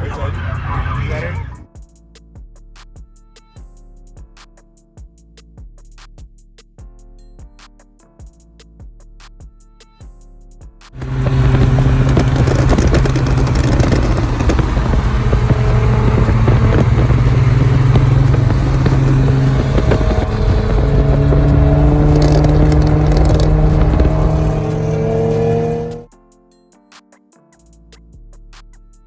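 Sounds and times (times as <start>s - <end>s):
car engine revving: 0.0s - 1.7s, 11.0s - 26.1s.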